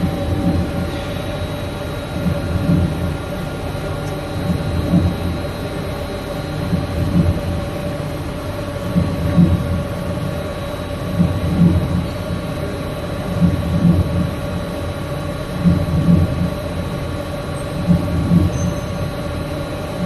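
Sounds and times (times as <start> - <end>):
low rumble: 0.0 - 5.6
mechanical hum: 0.0 - 20.0.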